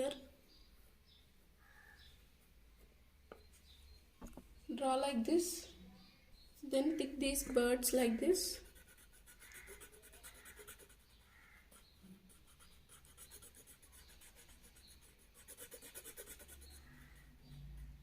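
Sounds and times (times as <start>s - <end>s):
pencil scratching on paper: 8.5s - 18.0s.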